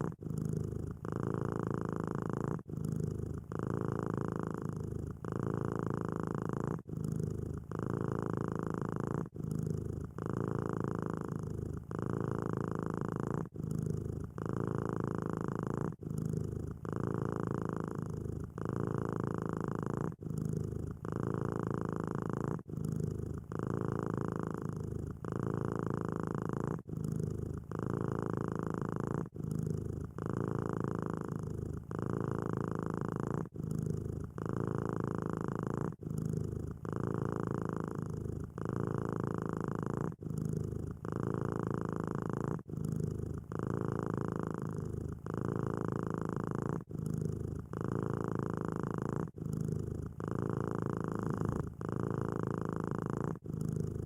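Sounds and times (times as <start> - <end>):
cat purring: 0.0 - 54.0.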